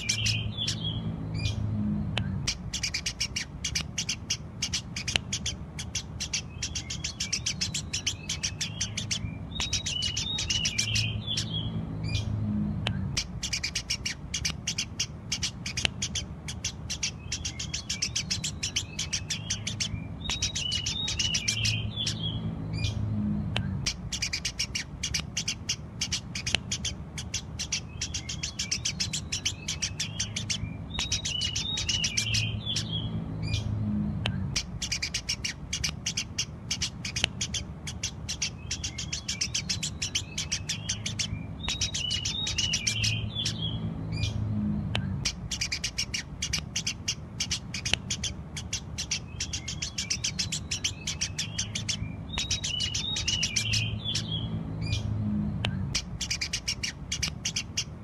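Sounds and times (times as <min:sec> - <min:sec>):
low steady hum: 0:00.0 - 0:58.0
sparrows chirping: 0:00.0 - 0:58.0.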